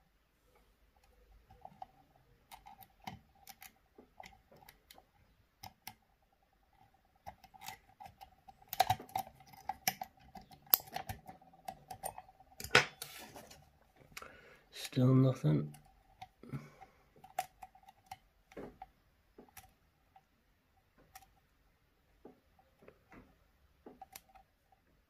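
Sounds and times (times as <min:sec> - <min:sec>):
lock pick clicking and scraping: 0:01.0 - 0:13.7, 0:17.2 - 0:20.3, 0:23.9 - 0:24.7.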